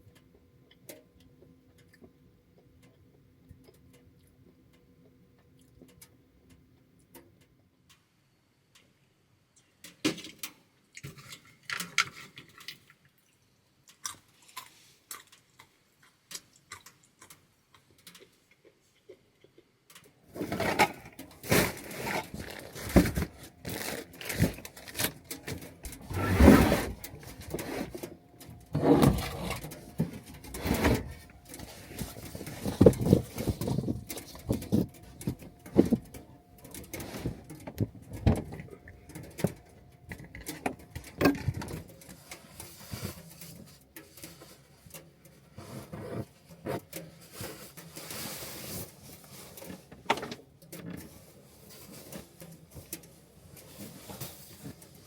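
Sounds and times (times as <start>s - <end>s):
small clicks and knocks: 0.1s - 8.1s, 8.7s - 13.1s, 13.9s - 26.1s, 26.9s - 45.5s
rustling and scraping: 20.3s - 55.0s.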